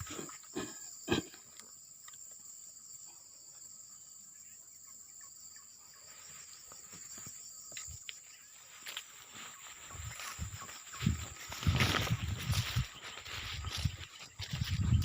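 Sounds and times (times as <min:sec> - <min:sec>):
insects chirring: 0:00.0 - 0:15.0.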